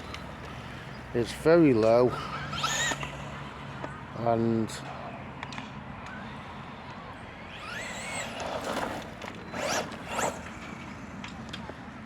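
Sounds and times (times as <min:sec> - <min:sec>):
electric motor whining: 0:02.2 - 0:03.2, 0:07.5 - 0:10.8
tyres rumbling on ground: 0:07.6 - 0:11.0.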